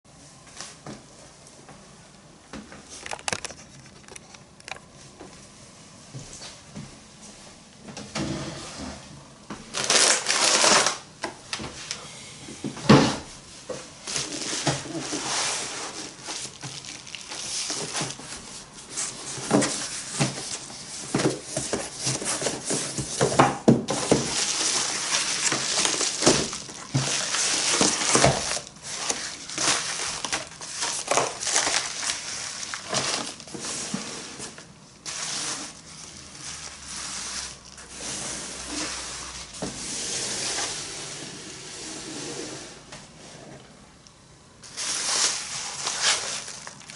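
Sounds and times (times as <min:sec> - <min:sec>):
packaging tearing: 0:09.7 - 0:11.1, 0:15.9 - 0:18.6, 0:23.9 - 0:33.5, 0:44.7 - 0:46.9
wrapping crinkling: 0:09.7 - 0:11.1, 0:14.0 - 0:23.3, 0:23.9 - 0:33.7, 0:34.4 - 0:39.6, 0:44.6 - 0:46.9.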